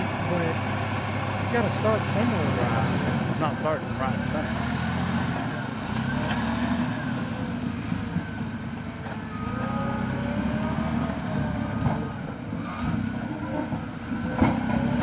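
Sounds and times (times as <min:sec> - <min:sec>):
bulldozer diesel engine running: 0:00.0 - 0:15.0.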